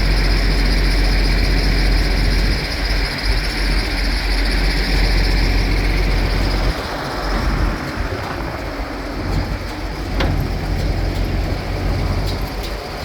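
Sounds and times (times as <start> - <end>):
tractor and baler droning: 0.0 - 13.0.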